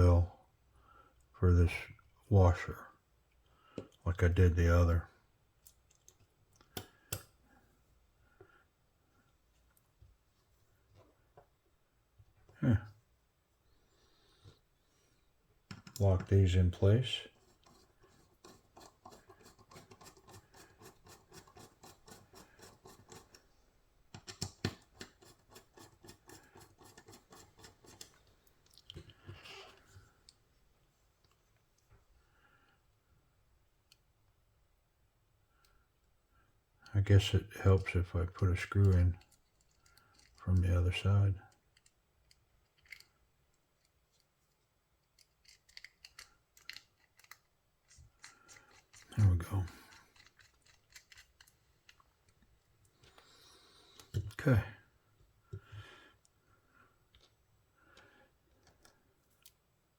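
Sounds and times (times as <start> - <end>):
small metallic screw clicks: 41.7 - 43.2, 45.0 - 49.1.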